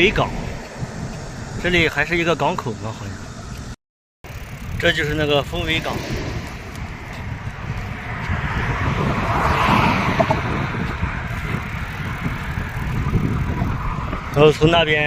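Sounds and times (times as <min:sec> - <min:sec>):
road traffic passing: 0:00.0 - 0:15.0
wind rumbling on microphone: 0:00.0 - 0:15.0.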